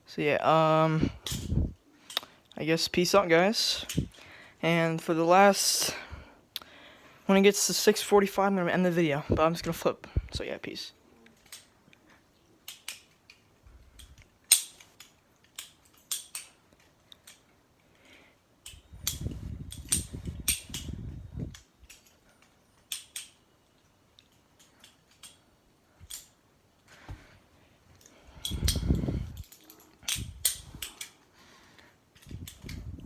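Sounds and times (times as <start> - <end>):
butterfly knife clicking: 14.0 - 17.4, 18.6 - 23.4, 24.2 - 25.4, 28.4 - 31.2.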